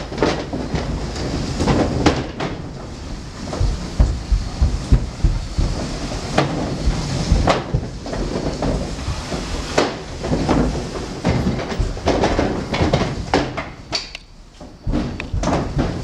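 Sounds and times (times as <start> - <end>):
door knocks and clacks: 0.0 - 14.2, 14.8 - 16.0
steady low rumble: 2.6 - 12.8.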